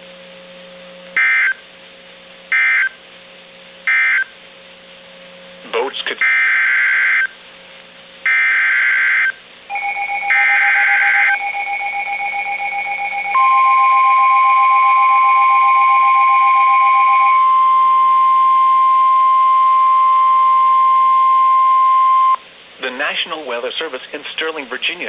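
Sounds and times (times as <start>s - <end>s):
steady warning alarm tone: 1.2s - 1.6s, 2.5s - 3.0s, 3.9s - 4.3s, 6.2s - 7.4s, 8.3s - 22.4s
pulsing alarm tone: 2.5s - 3.0s, 3.9s - 4.3s, 8.3s - 22.4s.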